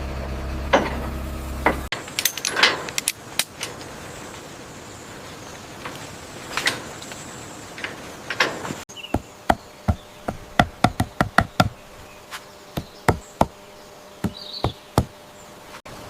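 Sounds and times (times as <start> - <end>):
irregular sharp knocks: 9.1 - 11.7.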